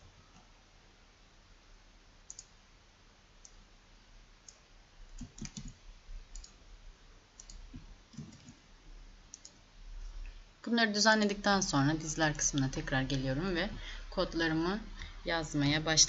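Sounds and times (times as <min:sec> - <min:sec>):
computer mouse clicking: 0:02.3 - 0:02.6, 0:05.2 - 0:06.6, 0:07.4 - 0:08.6, 0:09.3 - 0:09.6.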